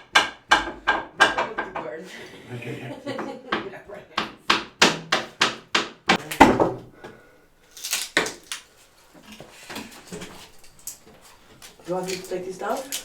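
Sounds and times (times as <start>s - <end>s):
hammer striking wall: 0.0s - 1.8s, 3.5s - 6.9s.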